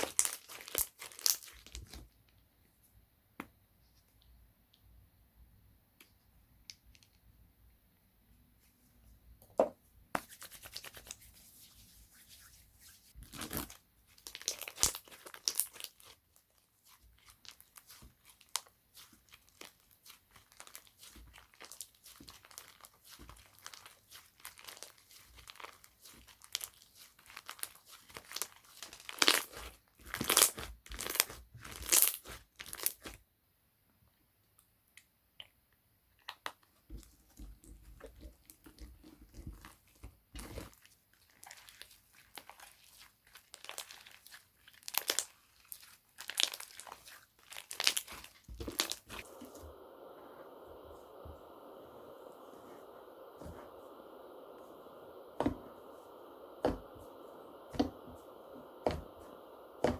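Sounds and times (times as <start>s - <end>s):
slime crackling and popping: 0.0s - 2.0s, 13.2s - 33.2s, 37.8s - 49.7s
sticky slime tearing: 41.4s - 49.2s.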